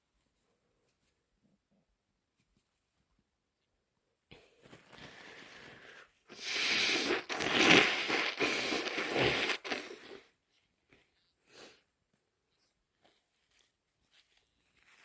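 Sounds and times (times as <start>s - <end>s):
person breathing: 4.3s - 10.3s, 11.2s - 11.9s
person blowing nose: 4.9s - 10.3s.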